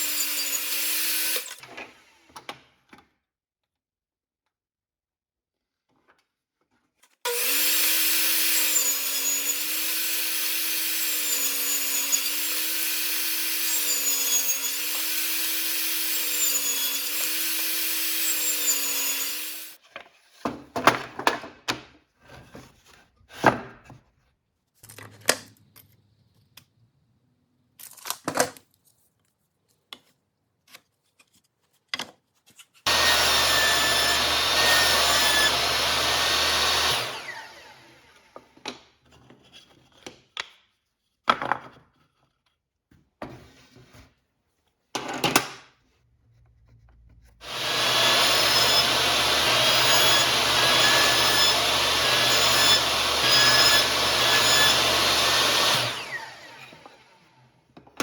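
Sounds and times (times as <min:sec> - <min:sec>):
power tool cutting wood: 0:00.0 - 0:02.2, 0:07.3 - 0:19.8, 0:32.9 - 0:38.5, 0:47.4 - 0:57.6.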